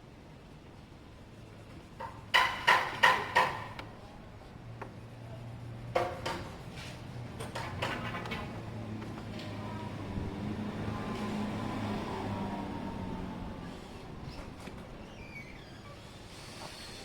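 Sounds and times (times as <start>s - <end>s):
light clattering and taps: 5.9s - 9.5s.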